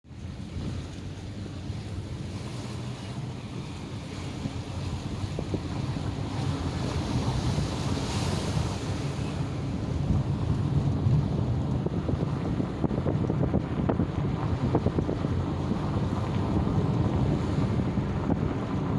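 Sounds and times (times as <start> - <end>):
wind buffeting microphone: 0.0 - 18.9
ocean waves breaking: 0.1 - 18.9.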